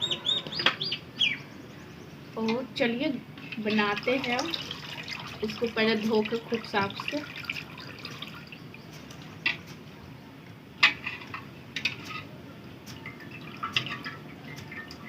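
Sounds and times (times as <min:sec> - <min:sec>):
water splashing in a bowl: 0:03.4 - 0:09.3, 0:12.9 - 0:15.0.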